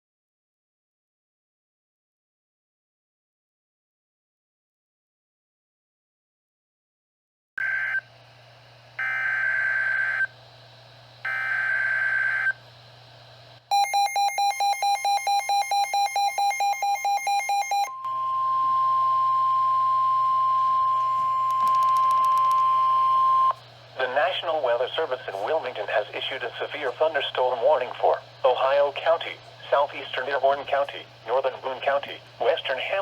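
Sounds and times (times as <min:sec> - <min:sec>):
steady warning alarm tone: 0:09.0 - 0:10.3, 0:11.2 - 0:12.6, 0:13.7 - 0:33.0
rapid electronic beeping: 0:20.1 - 0:23.6.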